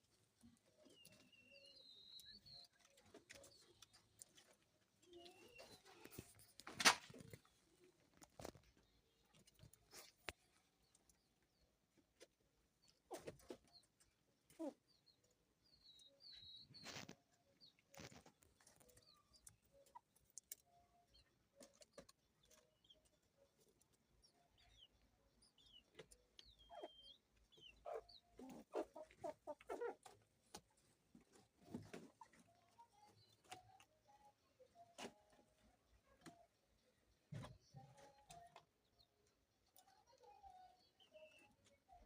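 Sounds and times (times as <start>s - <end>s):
chickens clucking: 25.7s - 33.9s.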